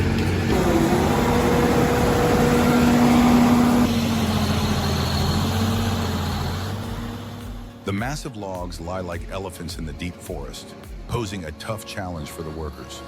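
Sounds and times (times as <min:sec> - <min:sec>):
diesel engine running: 0:00.0 - 0:07.8.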